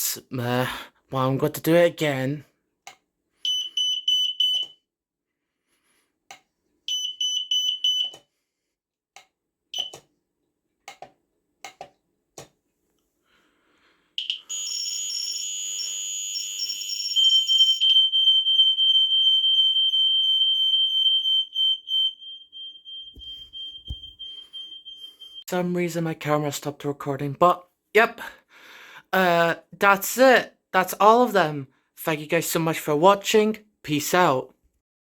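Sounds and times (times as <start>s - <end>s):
smoke alarm chirps and clicks: 2.9s - 4.9s, 6.3s - 8.3s, 9.2s - 10.1s, 14.2s - 25.4s
smoke alarm high-pitched tone: 3.4s - 4.8s, 6.9s - 8.2s, 14.2s - 25.4s
fluttering high-pitched alarm tone: 14.2s - 25.4s.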